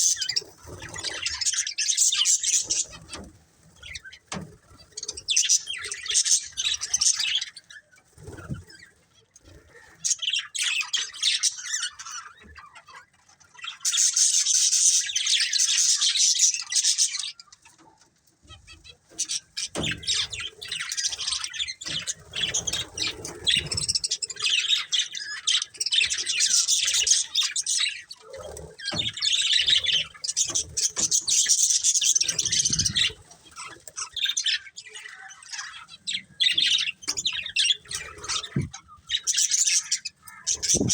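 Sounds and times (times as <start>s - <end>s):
budgerigars chirping: 0.0s - 8.9s, 19.2s - 40.9s
wings fluttering: 0.0s - 10.4s, 18.4s - 34.6s, 35.5s - 40.9s.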